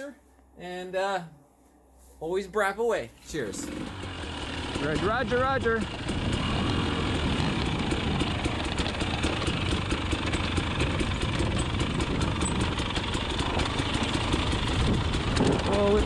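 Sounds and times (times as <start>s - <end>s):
two-stroke dirt bike engine running: 3.5s - 16.0s.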